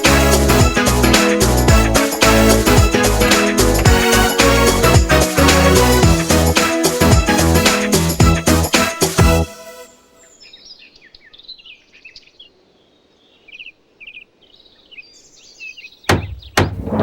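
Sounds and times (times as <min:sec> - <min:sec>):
music track: 0:00.0 - 0:10.1
birds chirping softly: 0:10.1 - 0:16.6
loud sharp thumps: 0:16.1 - 0:17.0.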